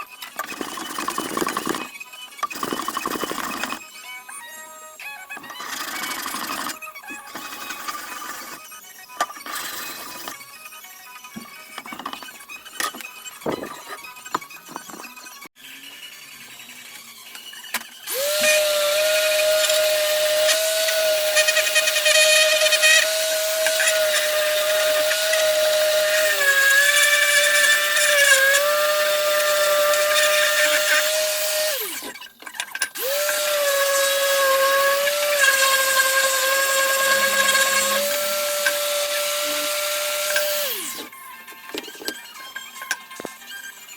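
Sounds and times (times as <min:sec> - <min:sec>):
power tool motor whining: 0:17.9 - 0:32.3, 0:32.9 - 0:41.2.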